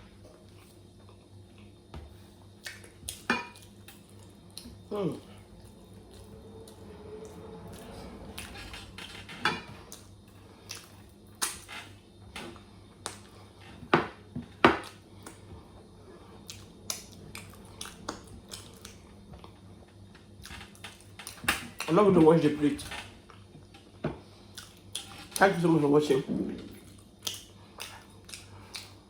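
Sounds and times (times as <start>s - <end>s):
chewing crunches: 9.9s - 11.7s, 16.4s - 19.6s, 26.7s - 29.0s.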